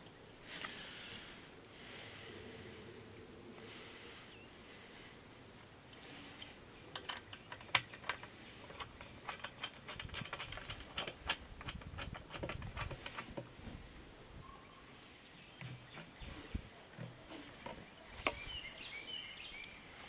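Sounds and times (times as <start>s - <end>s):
hard parts clicking and tapping: 6.9s - 13.8s.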